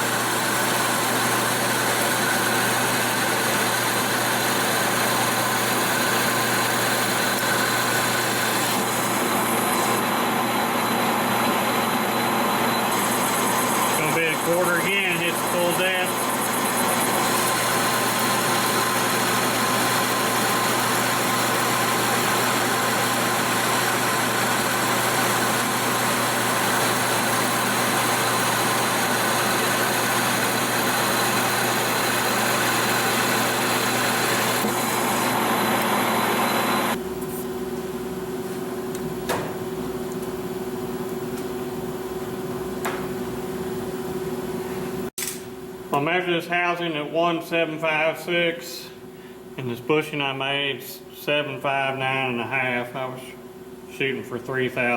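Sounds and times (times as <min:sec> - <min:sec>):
lathe cutting metal high tone: 0:00.0 - 0:37.0
lathe motor hum: 0:00.0 - 0:37.0.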